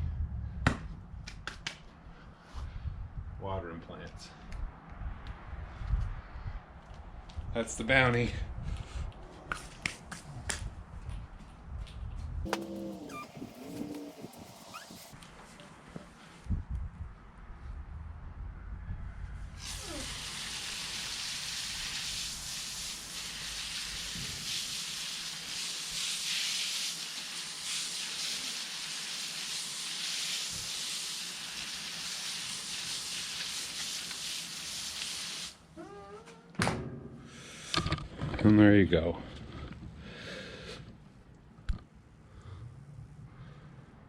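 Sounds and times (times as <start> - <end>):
water spraying from garden hose: 12.5 - 15.2, 19.6 - 35.6.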